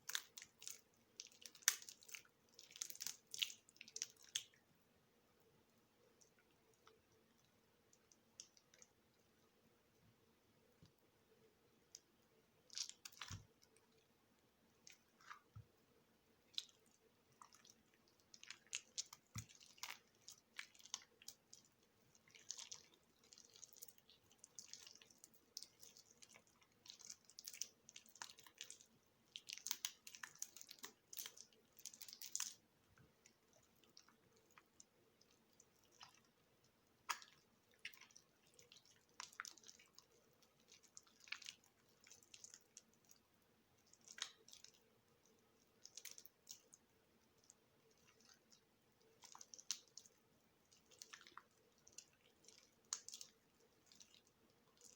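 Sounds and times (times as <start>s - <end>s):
knife cutting mushy soap: 11.9s - 14.1s, 14.7s - 15.8s, 16.4s - 43.2s.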